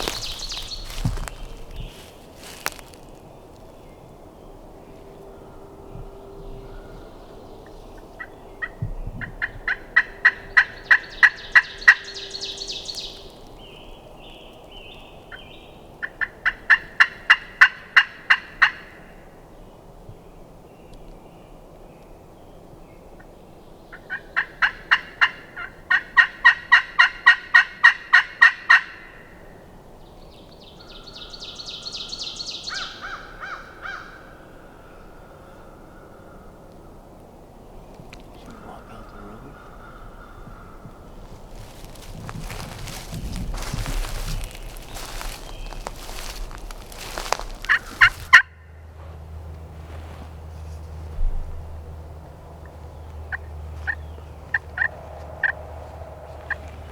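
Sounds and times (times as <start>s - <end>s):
turkey call raspy yelps: 47.0s - 48.6s.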